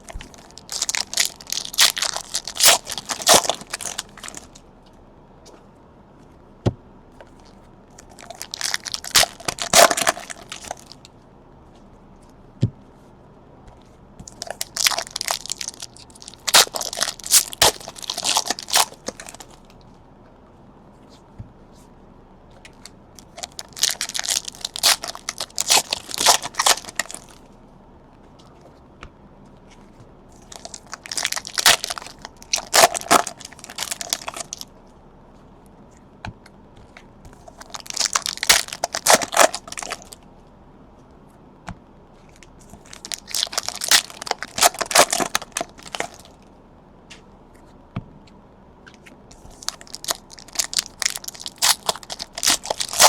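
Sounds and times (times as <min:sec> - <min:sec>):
wrappers tearing and crinkling: 0:00.0 - 0:04.6, 0:07.4 - 0:11.0, 0:14.2 - 0:19.7, 0:23.2 - 0:27.4, 0:30.4 - 0:34.7, 0:37.3 - 0:40.2, 0:42.7 - 0:46.4, 0:49.4 - 0:53.0.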